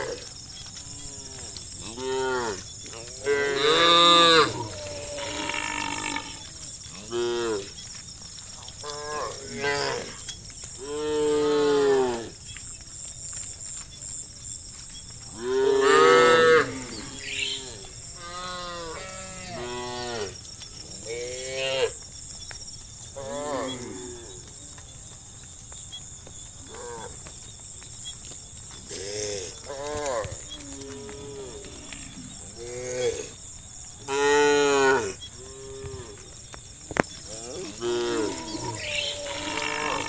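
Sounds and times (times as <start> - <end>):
cows mooing: 15.4 - 20.4, 37.6 - 40.0.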